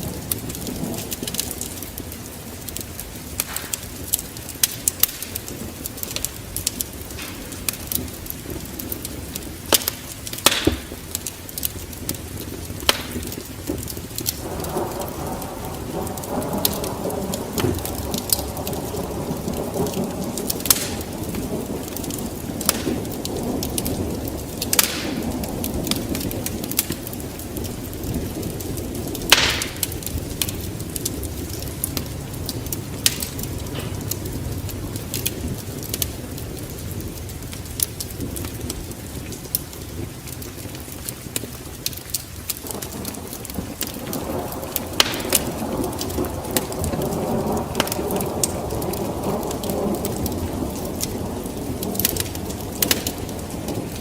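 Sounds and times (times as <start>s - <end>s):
rumble of thunder: 0.0s - 54.0s
steady rain: 0.0s - 54.0s
wood fire crackling and popping: 0.0s - 54.0s.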